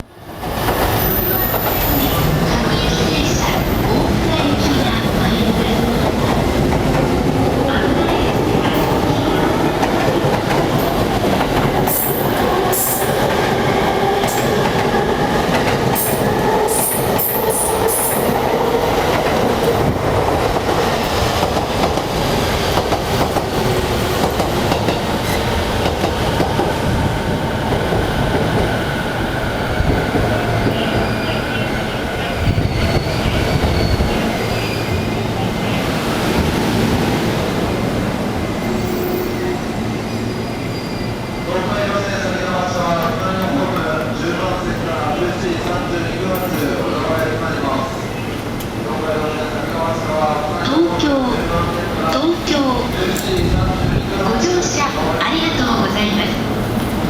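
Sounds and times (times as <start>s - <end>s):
train wheel squeals and clacks: 0.6s - 2.4s, 24.3s - 25.7s, 29.9s - 35.8s, 38.8s - 41.4s.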